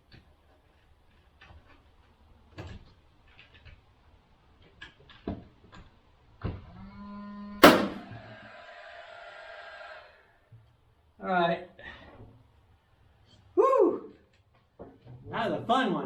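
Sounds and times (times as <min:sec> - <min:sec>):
sharp bang: 0:07.6 - 0:08.2.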